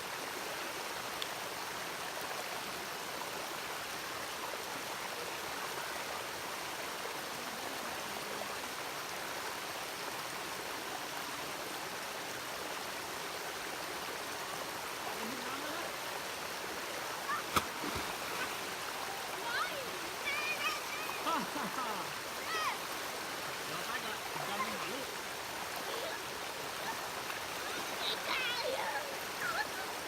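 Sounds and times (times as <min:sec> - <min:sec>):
water rushing over rocks: 0:00.0 - 0:30.0.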